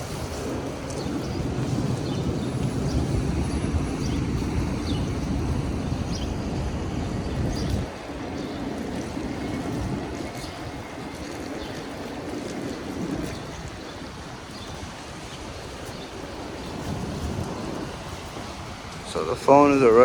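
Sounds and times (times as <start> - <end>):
tyres hissing on wet road: 0.0 - 20.0
wind on microphone: 0.0 - 20.0.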